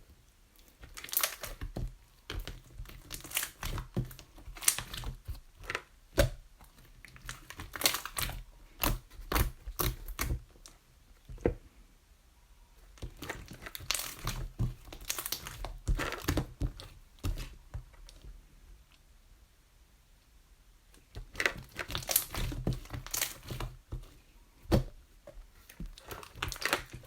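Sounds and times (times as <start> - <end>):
slime crackling and popping: 0.7 - 10.4, 13.0 - 17.6, 21.2 - 23.8, 25.8 - 27.0.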